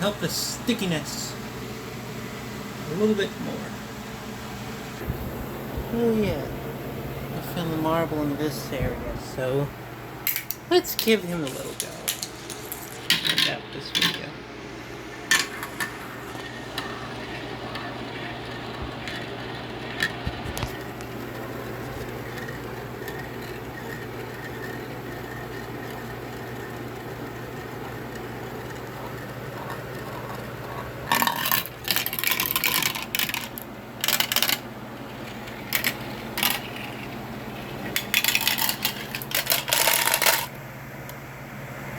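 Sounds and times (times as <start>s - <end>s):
low steady hum: 0.0s - 41.9s
marble clattering through marble run: 10.3s - 14.3s, 28.7s - 37.2s, 37.8s - 40.5s.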